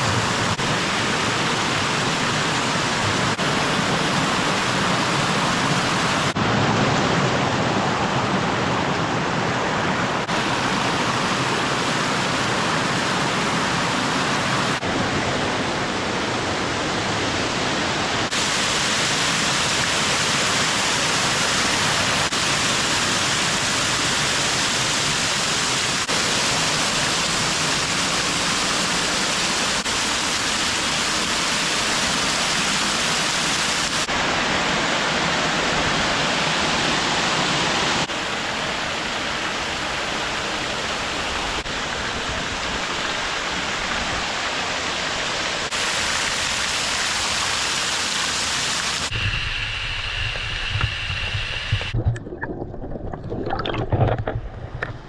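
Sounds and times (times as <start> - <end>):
waterfall rushing: 0.0 - 52.0.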